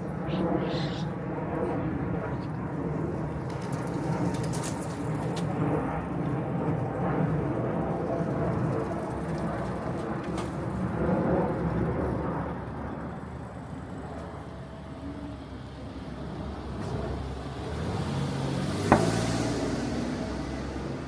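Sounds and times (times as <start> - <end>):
vehicle engine rumbling: 14.0 - 21.0.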